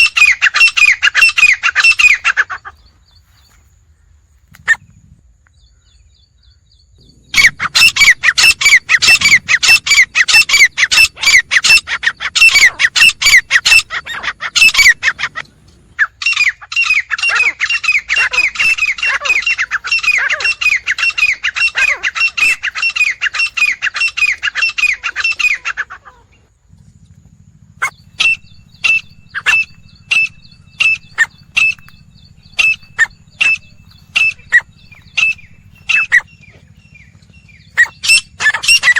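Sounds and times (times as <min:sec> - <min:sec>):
francolin calling harsh notes: 0:16.0 - 0:26.2, 0:27.8 - 0:36.4.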